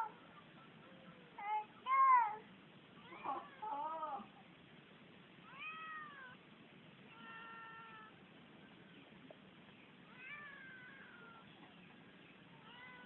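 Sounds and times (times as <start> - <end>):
cat meowing: 5.5 - 6.4, 7.1 - 8.2.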